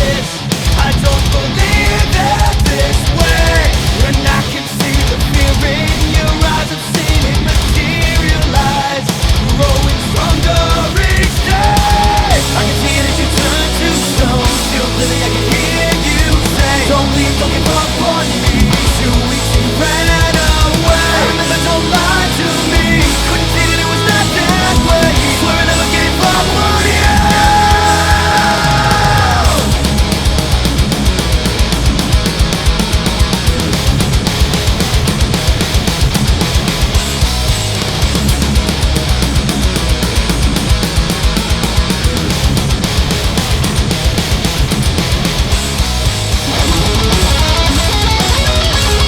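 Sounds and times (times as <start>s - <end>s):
fast driving drums: 0.0s - 49.0s
heavy metal guitar: 0.0s - 49.0s
heavy rock music: 0.0s - 49.0s.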